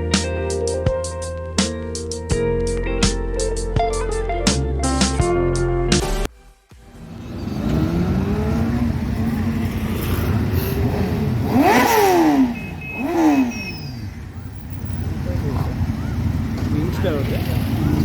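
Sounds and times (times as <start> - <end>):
vehicles passing: 0.0 - 3.4, 6.8 - 18.0
engine revving sharply: 6.9 - 18.0.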